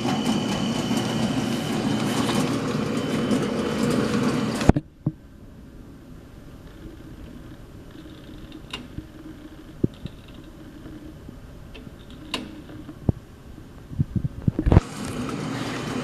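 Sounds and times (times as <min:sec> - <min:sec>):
drill press motor humming: 0:00.0 - 0:13.7
sharp clicks and knocks: 0:06.6 - 0:11.1, 0:11.7 - 0:13.2.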